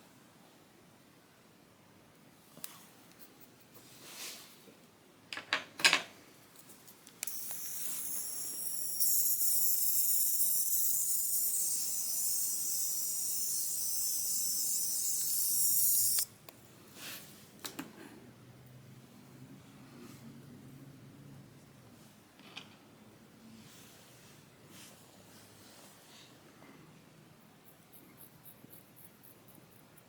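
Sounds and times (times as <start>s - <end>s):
high-pitched hiss: 7.2s - 16.3s.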